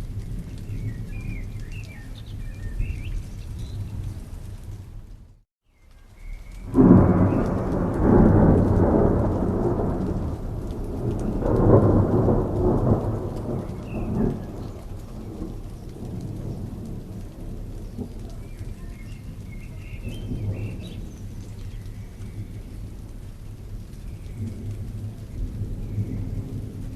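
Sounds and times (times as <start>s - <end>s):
steady rain falling: 0.0s - 26.9s
thunder rolling: 6.6s - 26.9s.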